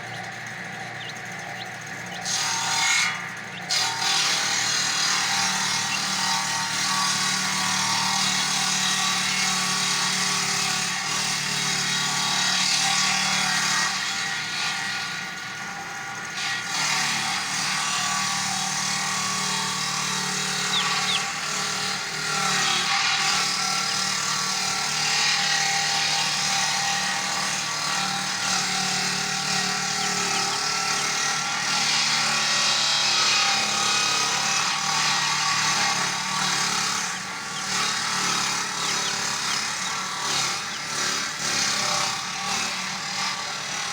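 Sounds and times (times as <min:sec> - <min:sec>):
chainsaw cutting wood: 0:00.0 - 0:43.9.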